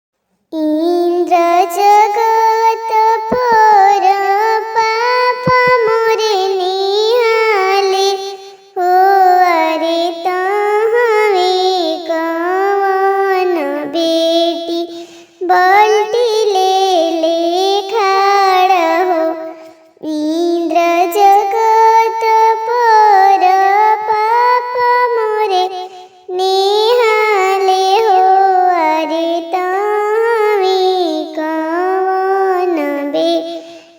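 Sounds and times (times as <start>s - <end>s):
woman singing: 0.6s - 19.5s.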